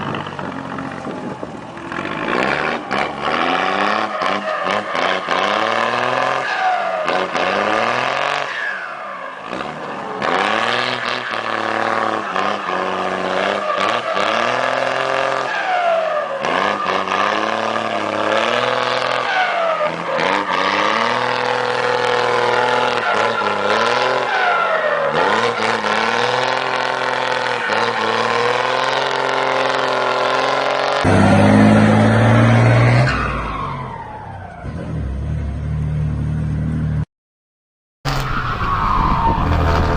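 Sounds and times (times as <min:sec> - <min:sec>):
truck diesel engine accelerating: 0:00.0 - 0:37.1, 0:38.1 - 0:39.9
deeper engine sound: 0:38.1 - 0:39.9.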